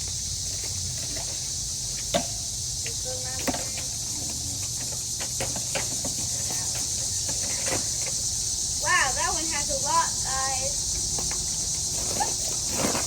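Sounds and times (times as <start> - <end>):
insects chorus: 0.0 - 13.0.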